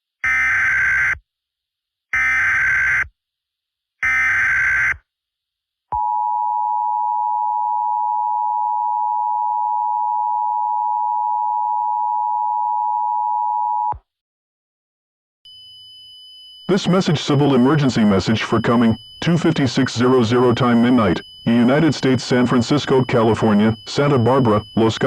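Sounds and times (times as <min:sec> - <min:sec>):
two-tone attention signal: 0:16.5 - 0:25.0
harsh warbling data bursts: 0:16.7 - 0:25.0.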